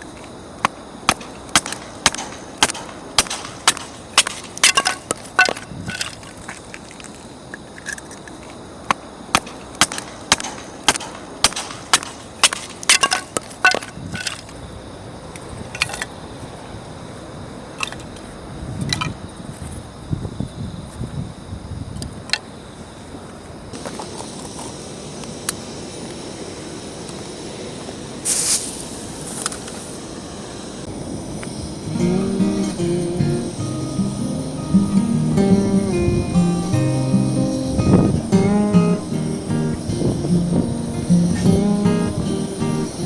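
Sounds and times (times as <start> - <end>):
baton striking knife on wood: 1.1 - 5.6.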